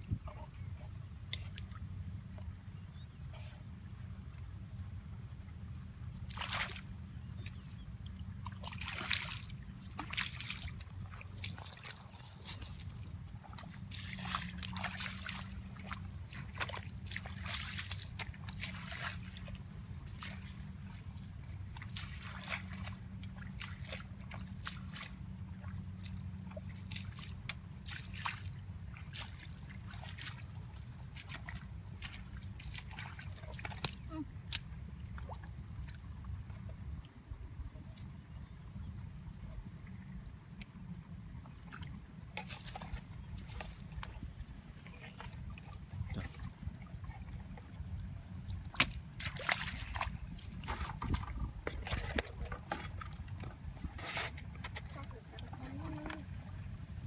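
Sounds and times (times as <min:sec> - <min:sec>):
water splashing and sloshing: 0:00.0 - 0:04.0, 0:06.1 - 0:57.0
steady low hum: 0:00.0 - 0:57.0.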